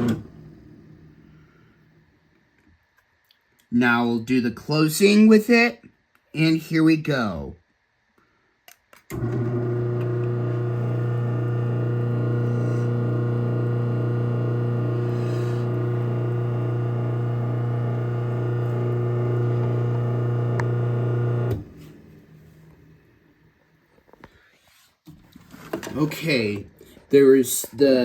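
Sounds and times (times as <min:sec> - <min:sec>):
garage door opener click: 0:00.0 - 0:00.6, 0:09.1 - 0:16.6
garage door opener motor hum: 0:00.0 - 0:01.4, 0:09.1 - 0:23.4.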